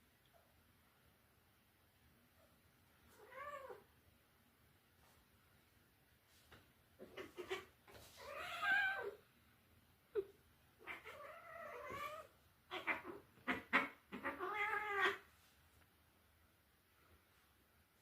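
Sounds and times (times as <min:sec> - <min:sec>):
cats yowling: 0:07.1 - 0:09.2, 0:10.8 - 0:15.2.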